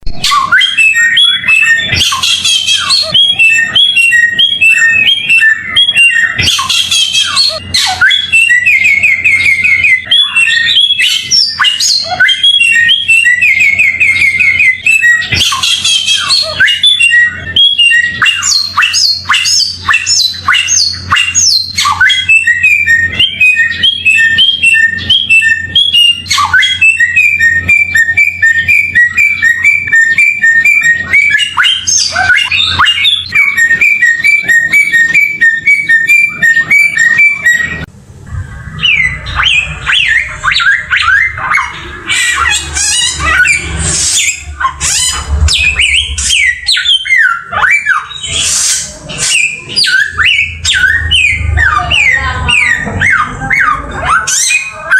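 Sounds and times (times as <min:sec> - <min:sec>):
harsh squawking chatter: 0:00.0 - 0:54.9
songbird chirping: 0:00.0 - 0:54.9.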